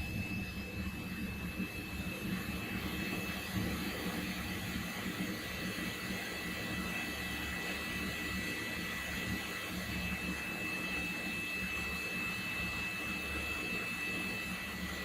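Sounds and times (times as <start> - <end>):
faint high whine: 0.0 - 15.0.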